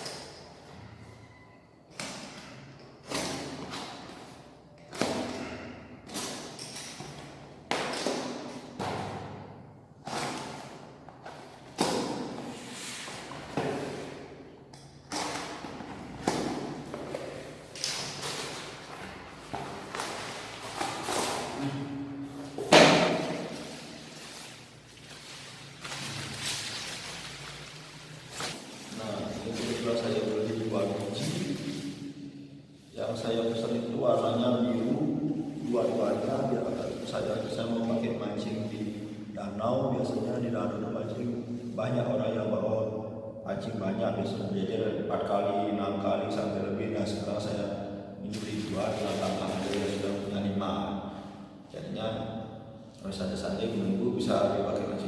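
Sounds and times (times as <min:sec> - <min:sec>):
packaging being handled: 0:16.9 - 0:21.6.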